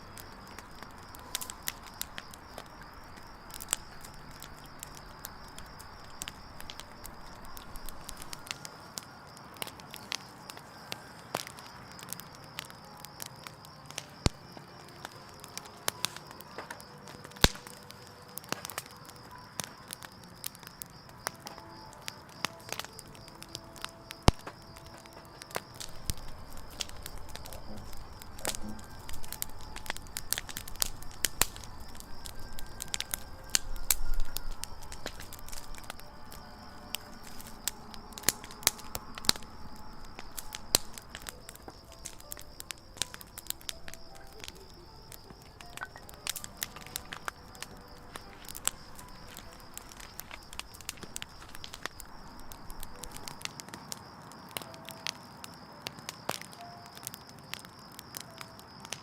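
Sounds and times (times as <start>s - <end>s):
campfire crackling and popping: 0.0s - 59.0s
faint steady high tone: 43.5s - 50.0s.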